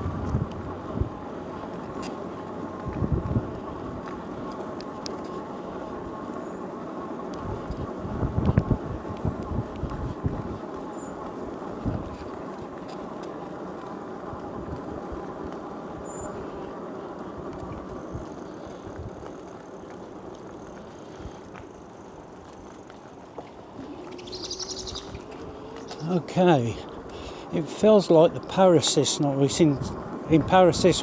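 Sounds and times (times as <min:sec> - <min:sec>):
tyre and wind rumble: 0:00.0 - 0:04.5, 0:07.4 - 0:12.8, 0:17.4 - 0:31.0
bird chirping: 0:24.0 - 0:26.1.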